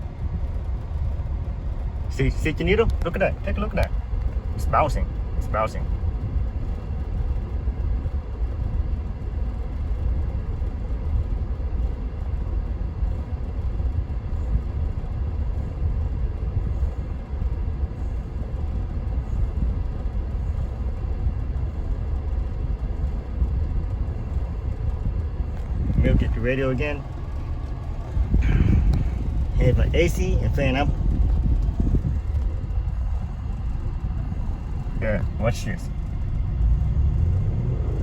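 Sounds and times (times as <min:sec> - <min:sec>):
car engine idling unevenly: 0:00.0 - 0:38.0.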